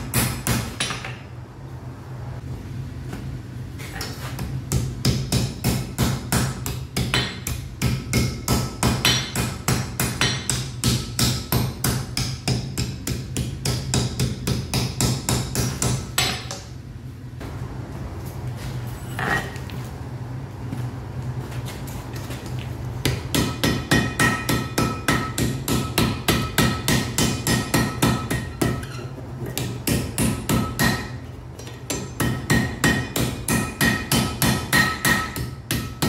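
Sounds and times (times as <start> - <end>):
hammer striking iron on anvil: 0.0 - 1.3, 4.0 - 16.7, 23.0 - 36.0
steady low hum: 0.0 - 36.0.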